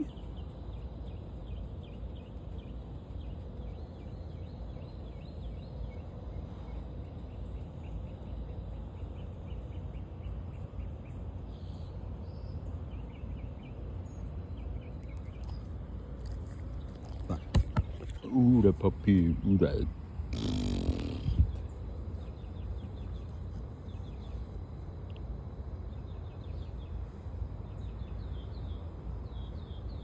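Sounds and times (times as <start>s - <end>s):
birds chirping: 0.0s - 25.0s
steady low rumble: 0.0s - 30.0s.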